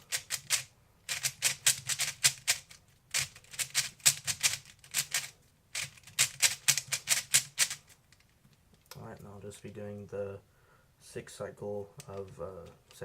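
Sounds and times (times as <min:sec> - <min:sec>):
puzzle cube layers clacking: 0:00.1 - 0:07.8.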